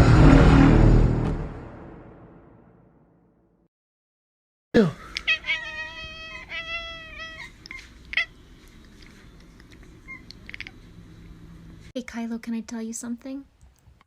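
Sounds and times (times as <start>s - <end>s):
cat meowing: 5.1s - 8.4s, 10.0s - 10.7s
small clicks: 7.6s - 10.8s.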